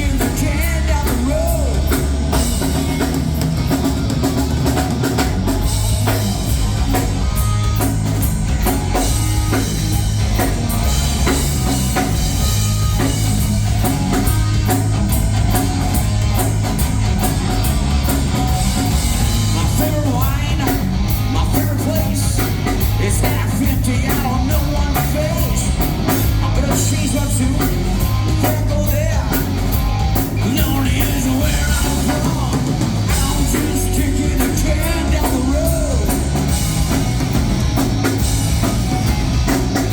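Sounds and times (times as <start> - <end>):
person singing: 0.0 - 2.2, 19.5 - 29.5, 30.4 - 36.5
drum kit: 0.0 - 39.9
live rock band playing: 0.0 - 39.9.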